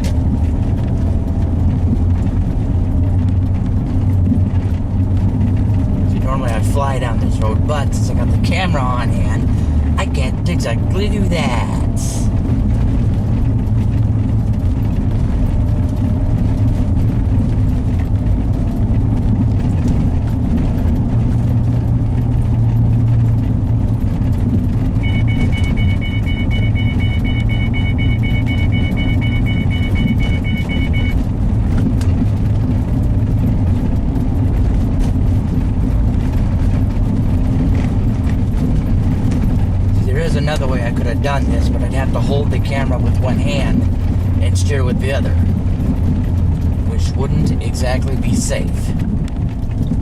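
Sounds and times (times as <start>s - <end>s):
car engine and tyre rumble: 0.0s - 50.0s
car warning chime beeping: 25.0s - 31.3s.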